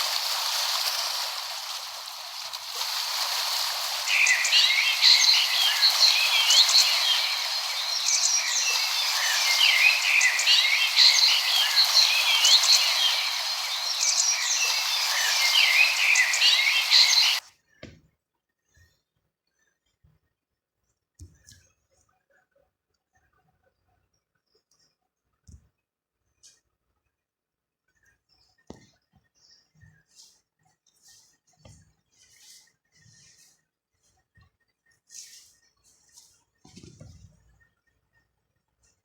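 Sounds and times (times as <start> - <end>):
frogs chirping: 0.0 - 17.4
steady hiss: 0.0 - 17.4.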